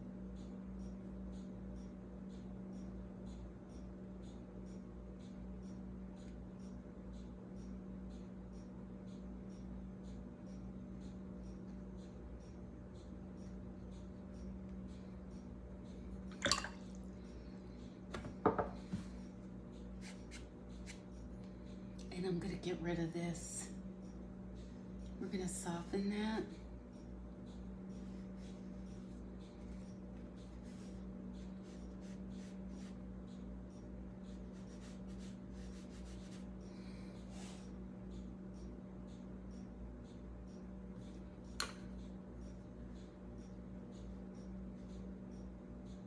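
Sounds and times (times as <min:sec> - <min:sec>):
low steady hum: 0:00.0 - 0:46.0
paintbrush strokes on paper: 0:28.0 - 0:33.1, 0:34.3 - 0:36.6.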